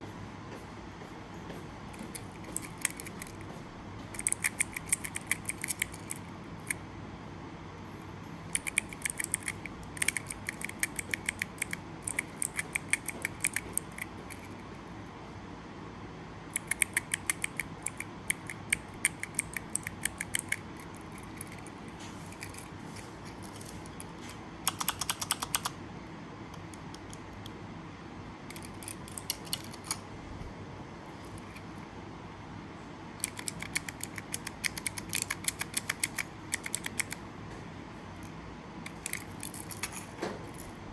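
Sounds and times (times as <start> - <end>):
mechanical keyboard key clacks: 2.0 - 6.8, 8.5 - 14.6, 16.5 - 25.8, 28.5 - 30.0, 33.2 - 37.2, 38.9 - 40.8.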